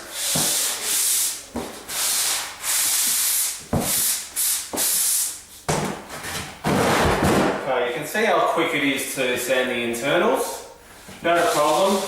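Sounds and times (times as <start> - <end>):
sanding drywall compound: 0.0 - 5.7, 11.2 - 12.0.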